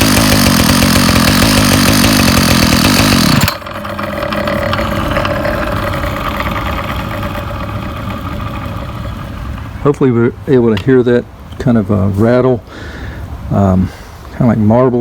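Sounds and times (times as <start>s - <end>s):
trimmer engine revving and idling: 0.0s - 10.0s
rattle like marbles: 2.2s - 9.8s.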